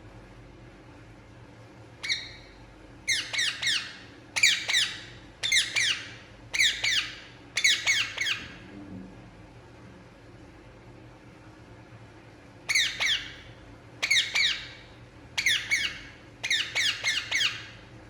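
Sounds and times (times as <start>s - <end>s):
parakeet squawking: 2.0s - 8.5s, 12.7s - 14.8s, 15.4s - 17.8s.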